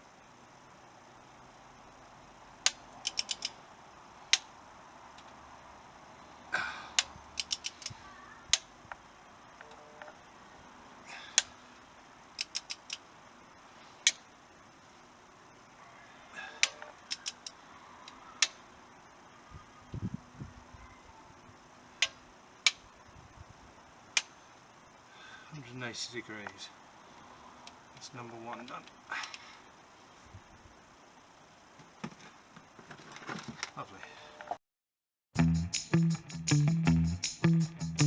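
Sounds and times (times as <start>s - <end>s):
torque wrench ratchet clicking: 3.0s - 3.6s, 7.0s - 8.0s, 12.4s - 13.0s, 17.1s - 17.5s.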